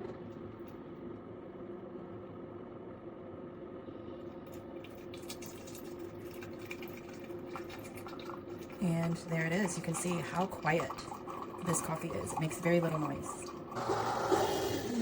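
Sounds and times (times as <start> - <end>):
coffee maker humming: 4.2 - 15.0
coffee trickling into cup: 4.4 - 15.0.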